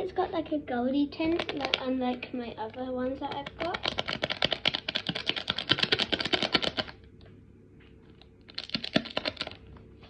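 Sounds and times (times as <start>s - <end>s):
slime squished by hand: 1.3s - 2.2s, 3.2s - 7.0s, 8.2s - 9.7s.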